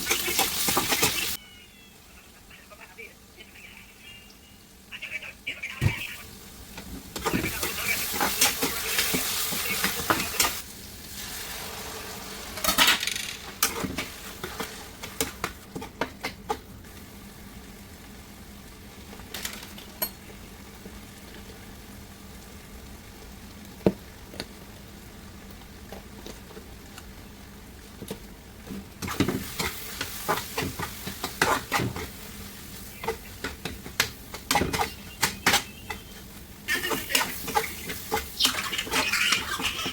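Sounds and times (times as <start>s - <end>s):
faint sizzle: 0.0s - 39.9s
utensil scraping a pan: 34.5s - 39.9s.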